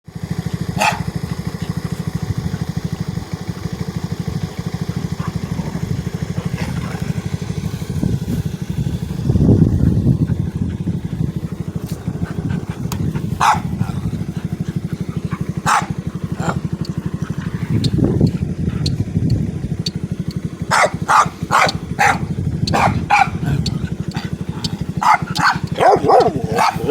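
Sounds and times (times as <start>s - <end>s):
scooter engine idling: 0.1s - 26.9s
dog barking: 0.7s - 3.0s, 4.3s - 7.2s, 12.8s - 14.2s, 15.2s - 16.7s, 20.7s - 26.9s.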